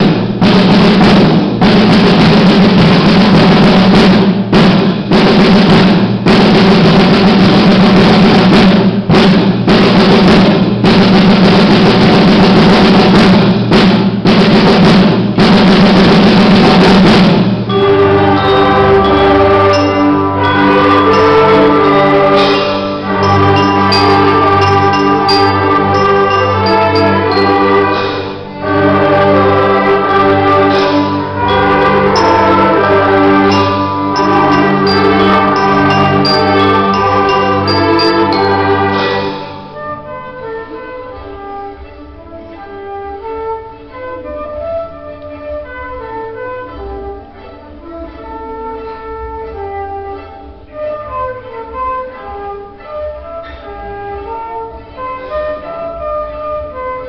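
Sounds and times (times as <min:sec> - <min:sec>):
loud drum roll: 0:00.0 - 0:41.5
band playing sustained chords: 0:17.5 - 0:41.5.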